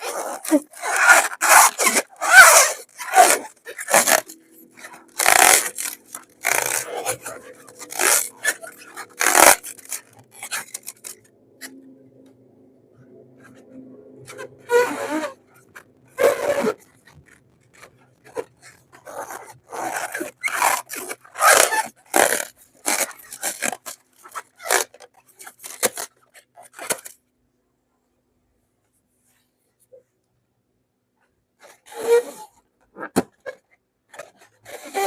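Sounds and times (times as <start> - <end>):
rubber balloon squishing: 0.0 - 11.2, 14.3 - 26.1.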